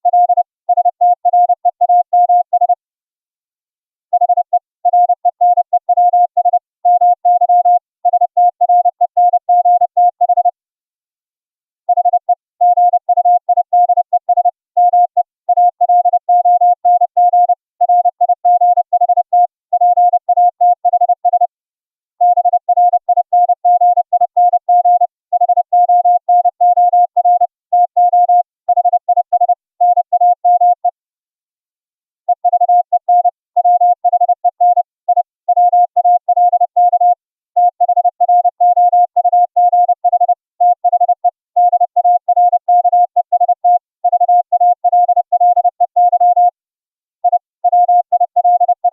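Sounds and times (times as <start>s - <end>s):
morse code tone: 4.2s - 10.6s, 22.2s - 31.0s, 32.3s - 46.6s, 47.2s - 48.9s.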